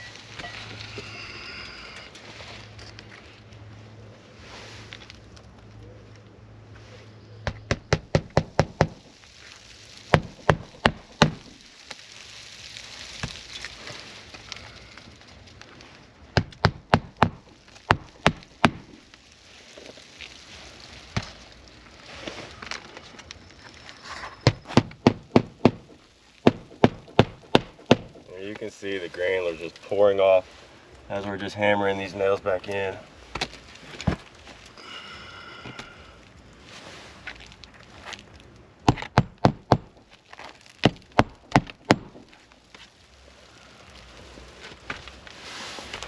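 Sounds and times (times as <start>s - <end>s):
hammer striking roofing nails: 7.5s - 9.0s, 10.1s - 11.5s, 24.5s - 28.2s, 38.8s - 40.0s, 40.8s - 42.3s.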